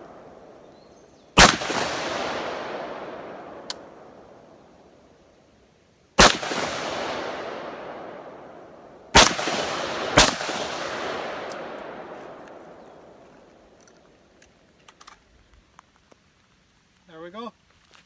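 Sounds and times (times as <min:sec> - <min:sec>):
rifle shots with echo: 0:01.4 - 0:04.5, 0:06.2 - 0:13.2.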